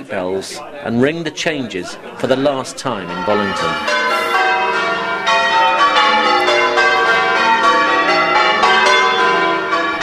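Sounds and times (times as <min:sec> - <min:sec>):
church bells ringing changes: 0:02.4 - 0:10.0.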